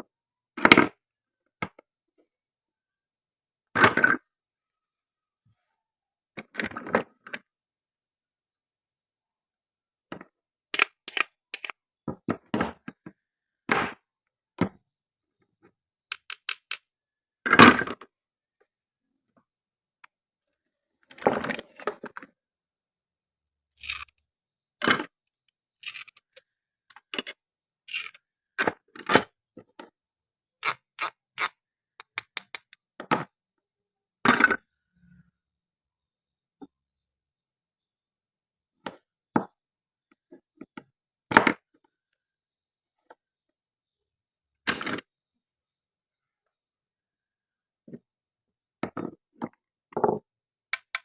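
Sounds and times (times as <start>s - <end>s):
toy food clicks and taps: 10.7s - 11.8s, 16.1s - 16.8s, 30.6s - 32.8s
toy knife scraping: 10.8s - 11.7s, 23.8s - 24.2s, 25.8s - 26.4s, 27.9s - 28.2s, 30.6s - 32.8s.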